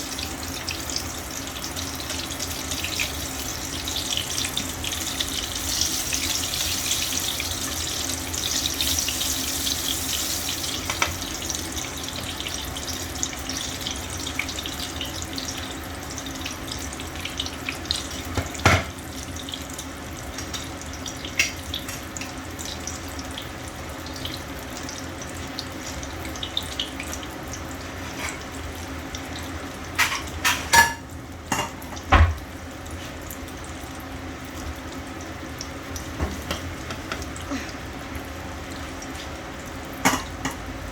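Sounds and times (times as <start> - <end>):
tap running into a sink: 30.0 - 32.5, 36.1 - 37.3.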